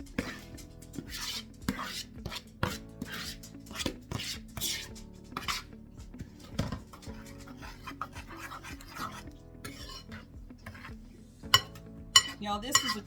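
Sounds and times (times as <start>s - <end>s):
spoon scraping snow in a bowl: 0.2s - 5.7s, 6.9s - 10.9s, 11.6s - 13.0s
spoon clinking against bowl: 11.5s - 13.0s.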